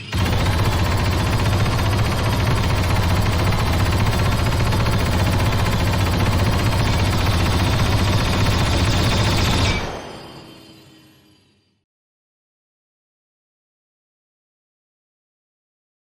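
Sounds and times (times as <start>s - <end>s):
rapid-fire gun burst: 0.0s - 10.0s
gunfire echo: 0.1s - 9.9s.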